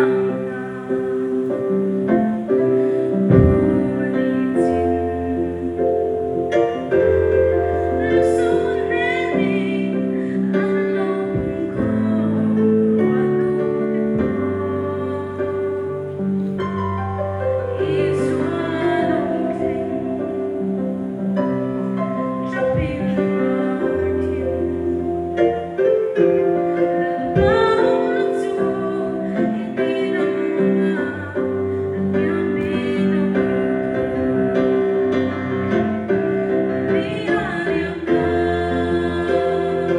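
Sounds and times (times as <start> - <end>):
instrumental accompaniment: 0.0 - 39.9.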